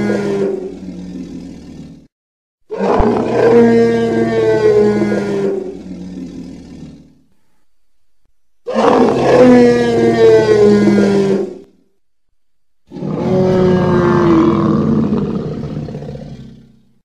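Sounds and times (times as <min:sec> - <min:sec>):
deep monster roar: 0:00.0 - 0:02.1, 0:02.7 - 0:07.2, 0:08.7 - 0:11.7, 0:12.9 - 0:16.8.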